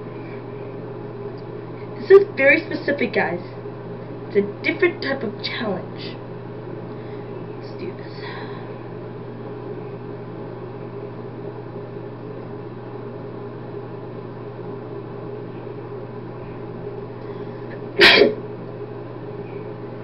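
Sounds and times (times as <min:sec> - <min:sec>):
steady low hum: 0:00.0 - 0:20.0
person sneezing: 0:18.0 - 0:18.4.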